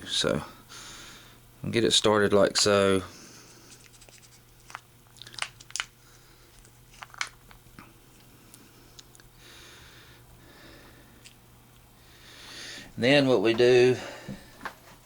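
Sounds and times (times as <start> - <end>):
faint steady hum: 0.0 - 15.0
plastic shell crackling clicks: 6.6 - 7.6.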